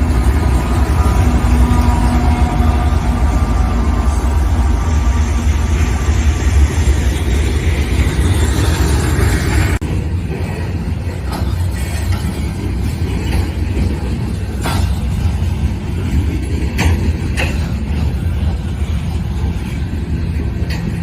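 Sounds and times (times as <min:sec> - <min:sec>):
freight train wheels rumbling: 0:00.0 - 0:21.0
sharp rail clicks: 0:07.1 - 0:21.0.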